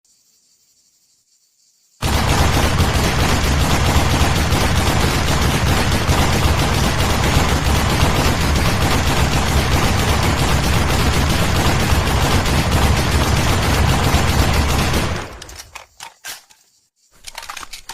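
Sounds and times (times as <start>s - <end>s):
machine gun automatic fire: 2.0s - 15.9s.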